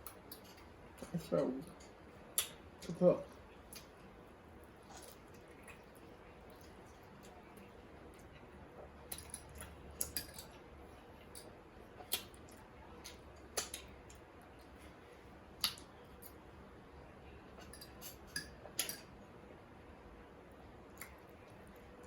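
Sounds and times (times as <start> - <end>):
chewing with mouth smacks: 1.7 - 16.4, 20.9 - 22.0.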